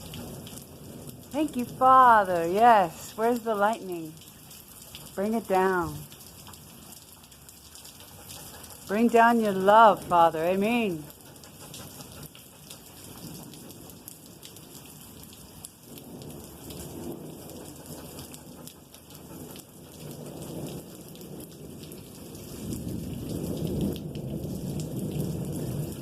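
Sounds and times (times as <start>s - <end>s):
rain patter: 0.0s - 26.0s
rolling thunder: 13.0s - 26.0s.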